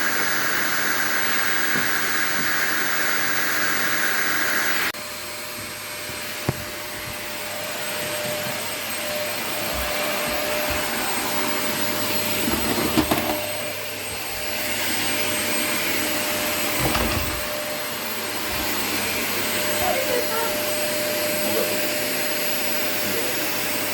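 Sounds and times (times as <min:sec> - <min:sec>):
vacuum cleaner running: 0:00.0 - 0:23.9.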